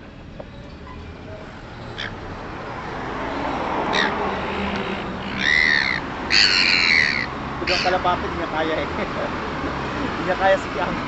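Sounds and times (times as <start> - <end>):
seagulls squawking: 1.8 - 2.2, 3.6 - 8.2.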